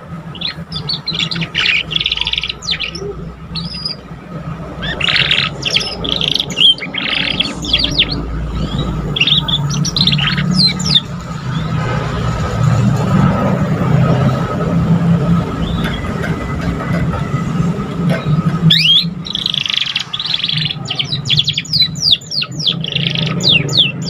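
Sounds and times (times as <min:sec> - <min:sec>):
canary singing: 0:00.0 - 0:12.0, 0:18.1 - 0:24.0
steady low hum: 0:00.0 - 0:24.0.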